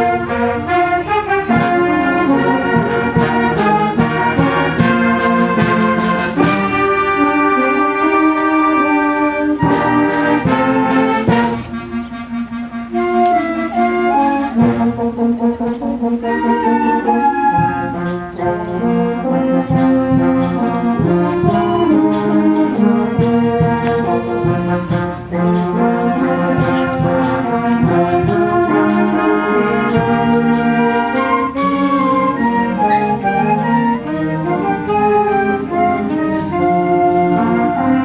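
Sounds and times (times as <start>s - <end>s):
concert band with brass: 0.0s - 38.0s
drum strikes: 1.5s - 6.9s.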